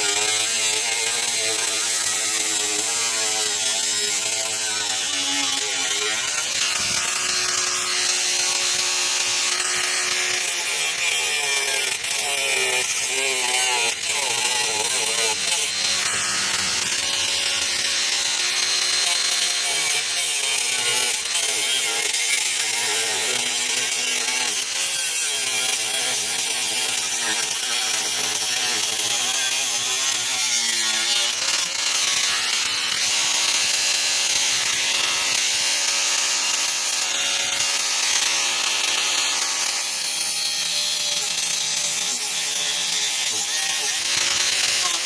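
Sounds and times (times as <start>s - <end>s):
cutoff wheel grinding steel: 0.0s - 24.8s.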